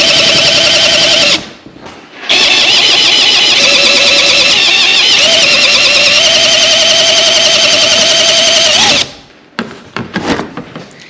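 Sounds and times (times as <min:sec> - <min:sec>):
power cutting tool whining: 0:02.3 - 0:09.2.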